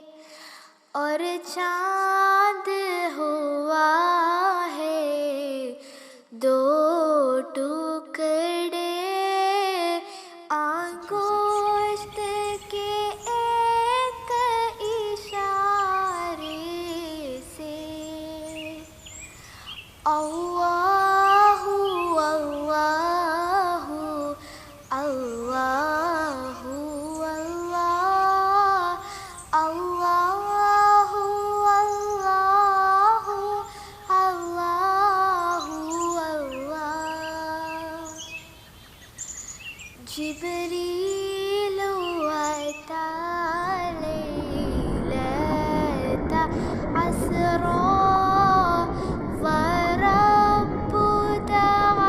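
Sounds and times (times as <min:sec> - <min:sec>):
person singing wordless melody: 0:00.0 - 0:38.5, 0:40.0 - 0:52.0.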